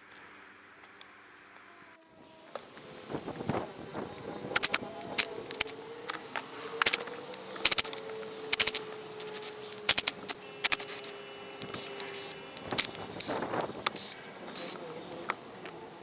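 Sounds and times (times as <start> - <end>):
tools clicking on metal bolts: 4.6 - 5.7, 7.6 - 14.8.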